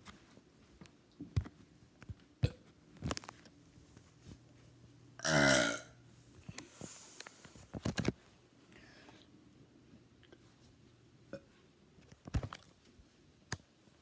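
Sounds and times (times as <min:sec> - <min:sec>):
man burping: 0:05.2 - 0:06.0.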